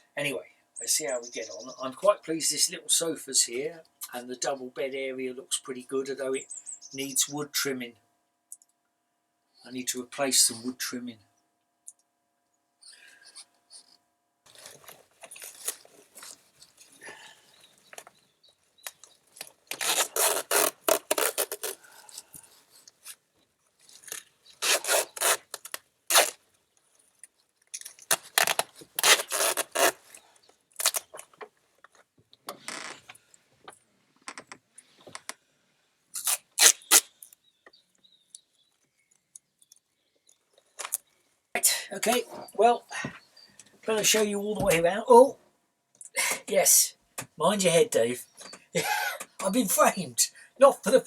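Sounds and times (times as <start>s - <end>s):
scraping and rubbing: 13.3s - 17.0s, 19.4s - 23.2s, 23.8s - 26.4s, 28.0s - 30.2s.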